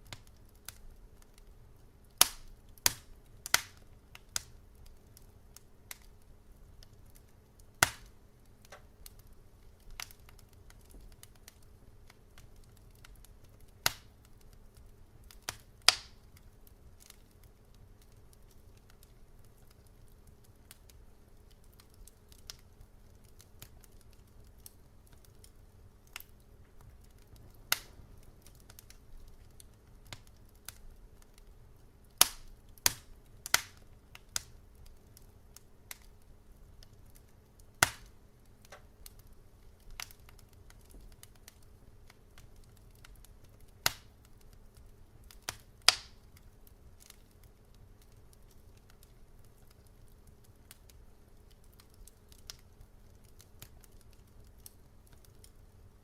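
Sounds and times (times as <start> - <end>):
faint low hum: 0.0 - 56.0
wood fire crackling: 0.0 - 56.0.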